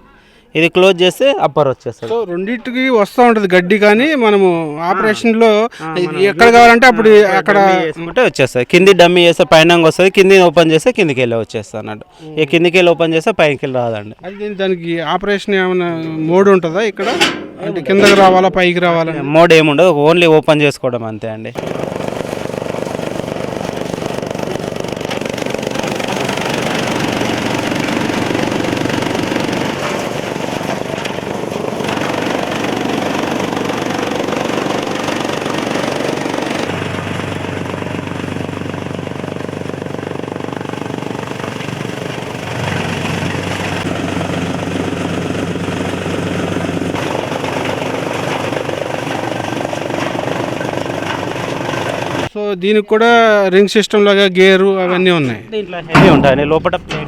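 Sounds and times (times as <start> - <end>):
chaff cutter chopping fodder: 21.6 - 52.3.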